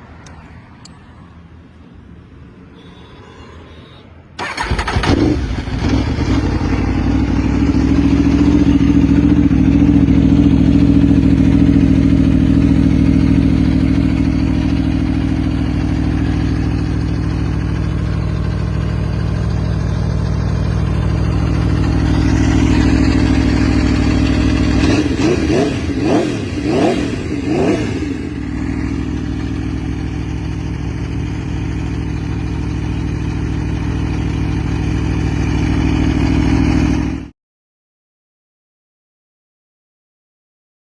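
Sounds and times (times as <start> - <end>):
motorcycle starting and idling: 4.4 - 37.3.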